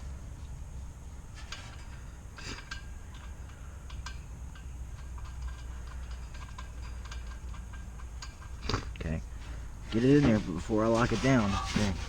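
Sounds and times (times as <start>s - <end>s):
steady low hum: 0.0s - 12.0s
light metallic clicks and taps: 2.6s - 9.1s.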